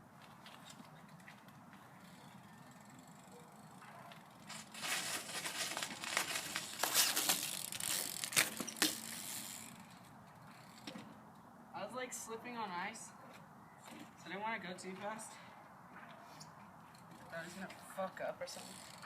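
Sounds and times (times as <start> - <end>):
bike tyres crunching over ice: 2.8 - 10.0.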